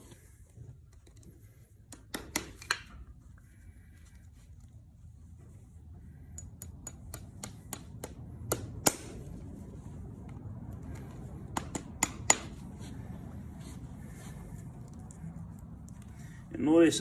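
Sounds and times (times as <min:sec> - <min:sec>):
hammer tapping nails: 0:01.9 - 0:02.9, 0:06.3 - 0:09.2, 0:11.5 - 0:12.6.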